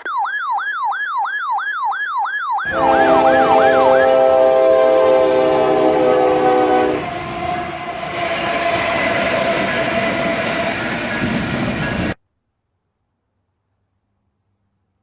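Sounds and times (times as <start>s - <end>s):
train horn chord: 2.7s - 8.0s
passing train rumble and rattle: 2.8s - 12.2s.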